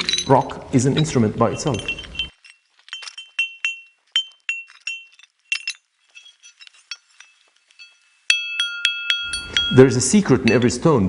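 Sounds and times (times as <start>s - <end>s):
flint stones striking: 0.0s - 10.7s.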